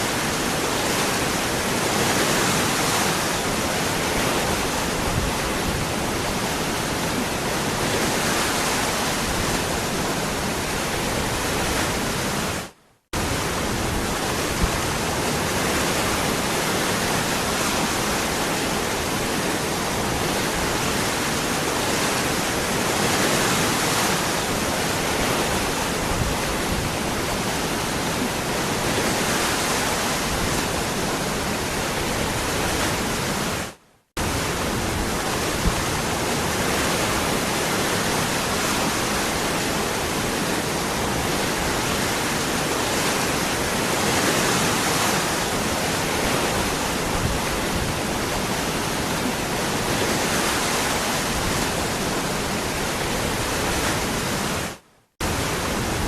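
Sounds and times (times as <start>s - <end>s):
waterfall rushing: 13.2s - 56.0s.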